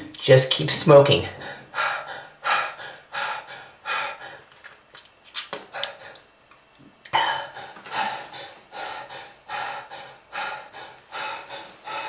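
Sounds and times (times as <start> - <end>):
person gasping breaths: 1.4 - 4.6, 5.7 - 6.3, 7.1 - 12.0.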